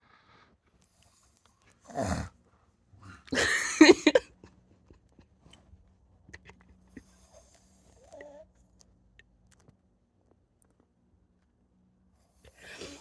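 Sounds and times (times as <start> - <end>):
person snoring: 1.9 - 2.3.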